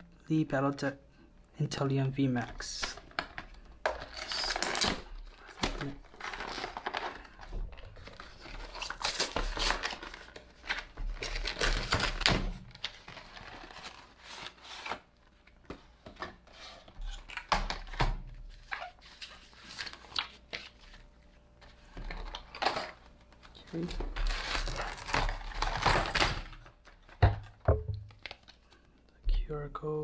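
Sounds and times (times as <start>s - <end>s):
packaging tearing and crinkling: 3.9s - 15.2s, 23.7s - 26.2s.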